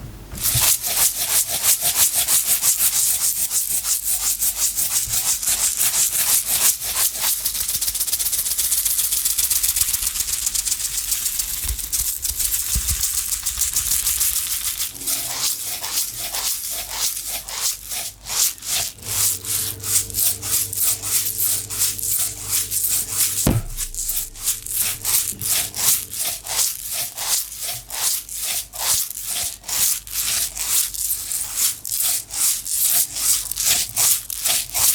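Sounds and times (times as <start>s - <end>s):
objects rattling in shaken container: 5.7s - 17.4s.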